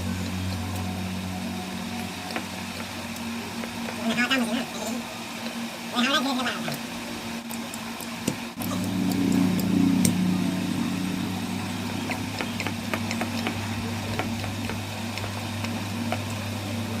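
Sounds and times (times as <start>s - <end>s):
car engine idling: 8.6s - 17.0s.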